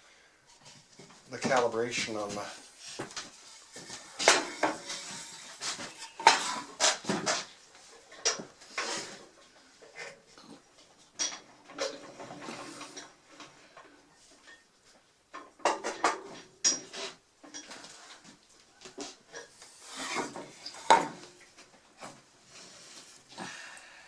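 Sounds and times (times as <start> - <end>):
wood and metal knocking: 15.4 - 16.9.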